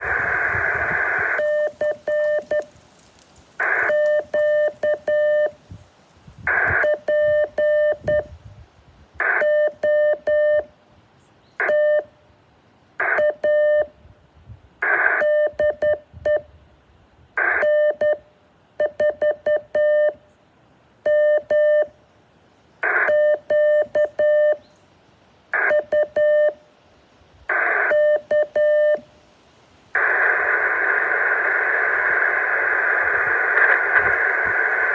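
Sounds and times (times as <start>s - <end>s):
radio hiss: 0.0s - 14.0s, 14.8s - 20.1s, 21.0s - 24.7s, 25.5s - 34.9s
morse code beeping: 1.2s - 2.7s, 3.6s - 5.6s, 6.5s - 8.3s, 9.2s - 10.7s, 11.6s - 12.1s, 13.0s - 13.9s, 15.1s - 16.4s, 17.4s - 18.2s, 18.8s - 20.2s, 21.1s - 21.9s, 22.9s - 24.6s, 25.6s - 26.6s, 27.6s - 29.0s.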